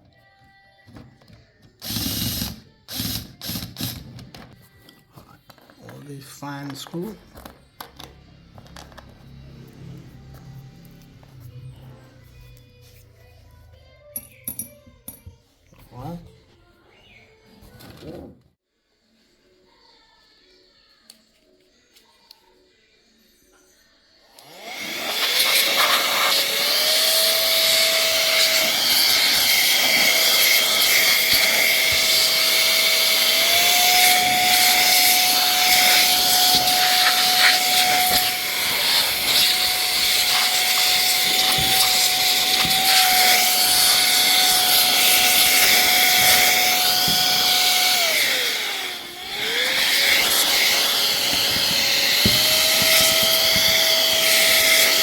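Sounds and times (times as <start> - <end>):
electric fan motor whining: 24.4 - 55.0.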